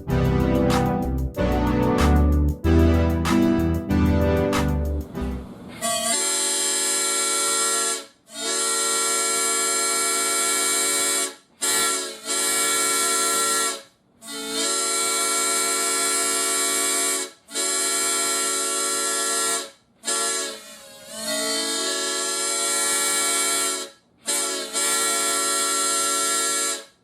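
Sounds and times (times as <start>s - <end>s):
toy train horn blasts: 5.7s - 27.0s.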